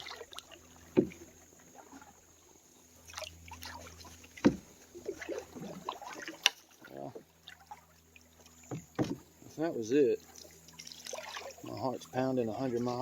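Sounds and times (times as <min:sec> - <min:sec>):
paddle strokes in water: 0:00.0 - 0:13.0
sharp knocks against canoe: 0:00.8 - 0:01.4, 0:03.6 - 0:07.2, 0:08.6 - 0:09.6.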